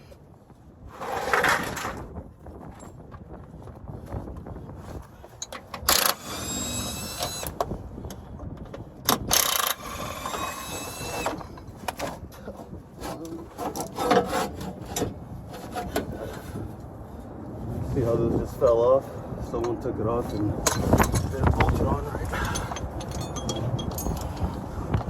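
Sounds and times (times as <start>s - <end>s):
metal clanks and knocks: 10.3s - 16.5s, 19.6s - 24.7s.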